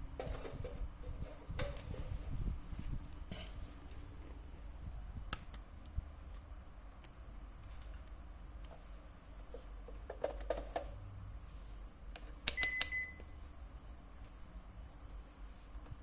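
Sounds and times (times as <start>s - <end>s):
multimeter high beep: 12.5s - 13.4s.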